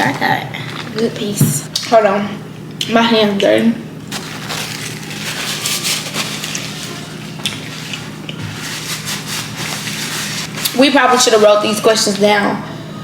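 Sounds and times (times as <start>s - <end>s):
seafood shells crackling and squishing: 4.1s - 10.9s.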